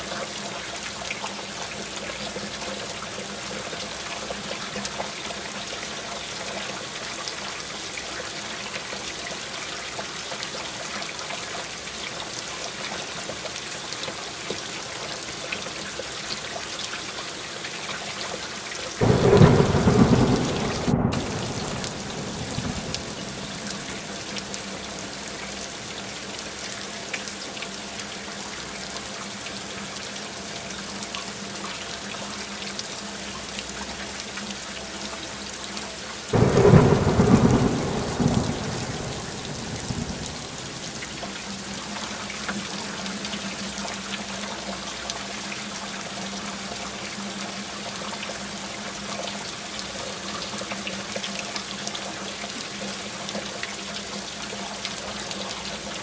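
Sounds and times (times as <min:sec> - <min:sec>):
steady rain falling: 0:00.0 - 0:56.0
thunder clap rumbling: 0:19.0 - 0:24.1, 0:36.4 - 0:41.3.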